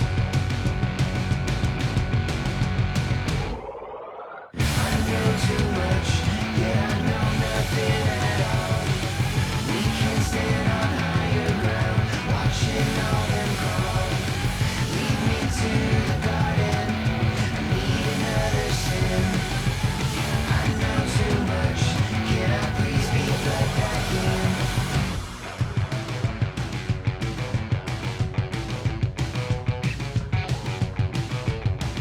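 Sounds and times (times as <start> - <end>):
distorted guitar: 0.0 - 3.6, 4.6 - 32.0
drums: 0.0 - 3.9, 4.6 - 32.0
yelled vocals: 3.1 - 28.6.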